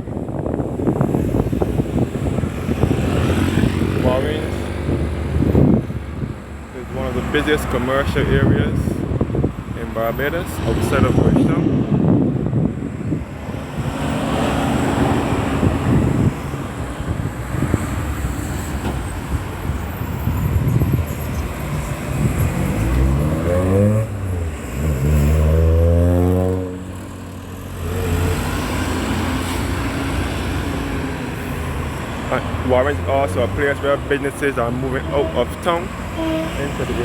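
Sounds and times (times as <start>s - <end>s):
road traffic: 0.0s - 37.0s
vehicle engine accelerating: 21.4s - 37.0s.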